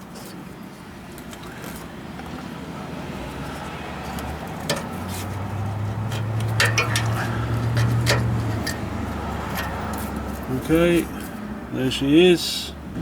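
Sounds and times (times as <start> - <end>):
metal parts clinking: 4.0 - 5.4, 6.1 - 11.3.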